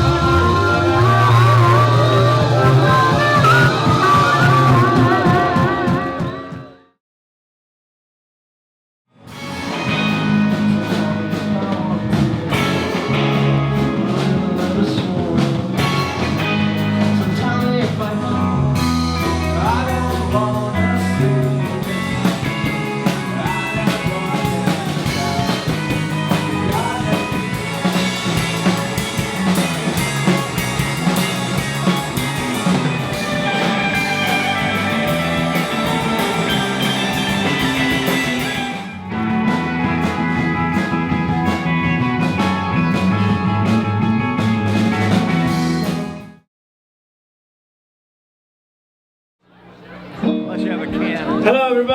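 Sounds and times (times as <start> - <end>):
person singing: 0.0 - 6.7, 10.6 - 30.4
rock band playing: 0.0 - 6.9, 9.2 - 46.5, 50.0 - 51.9.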